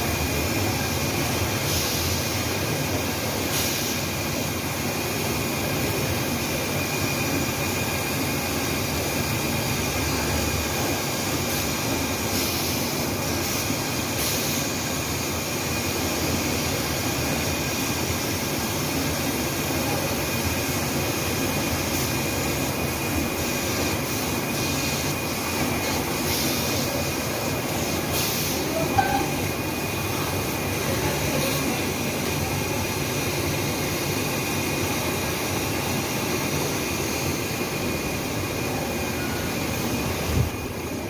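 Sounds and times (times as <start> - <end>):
machine whirring: 0.0 - 41.0
puffs of hiss: 1.6 - 2.5, 3.4 - 4.2, 11.3 - 14.9, 23.6 - 28.8.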